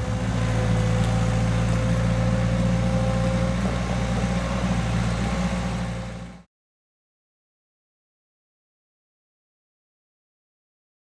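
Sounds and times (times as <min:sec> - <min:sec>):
skid steer engine running: 0:00.0 - 0:06.5.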